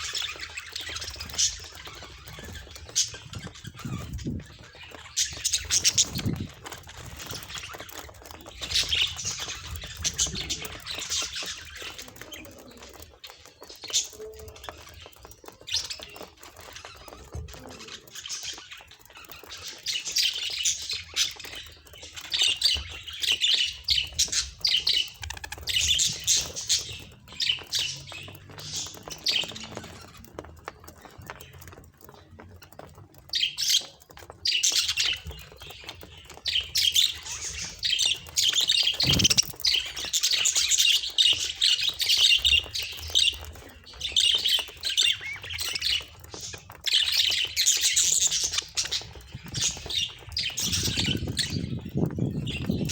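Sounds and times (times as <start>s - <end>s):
budgerigar chatter: 36.6s - 43.4s.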